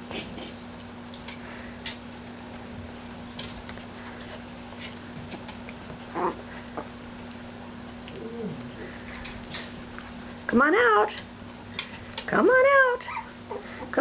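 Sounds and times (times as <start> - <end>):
faint steady hum: 0.0 - 14.0
puppy claws clicking on floor: 3.3 - 6.1.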